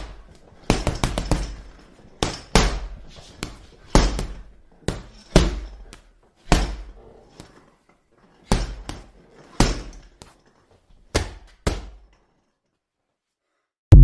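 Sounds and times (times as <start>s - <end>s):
punches on a punching bag: 2.2s - 5.6s, 6.5s - 7.0s.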